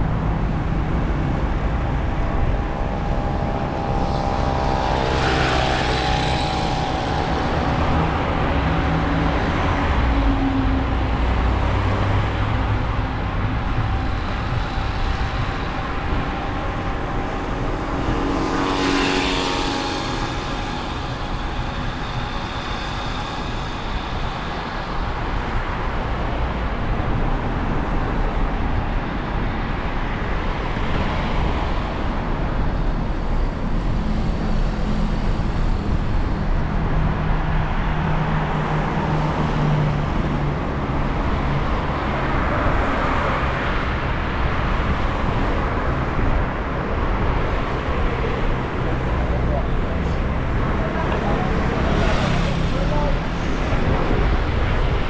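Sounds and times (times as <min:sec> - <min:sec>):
vehicle passing close: 0:00.0 - 0:24.2
traffic on wet road: 0:00.0 - 0:55.0.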